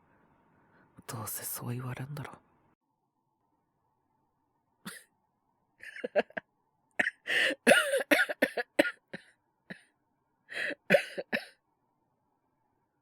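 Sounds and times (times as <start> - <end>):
man coughing: 7.0 - 9.8, 10.6 - 11.5.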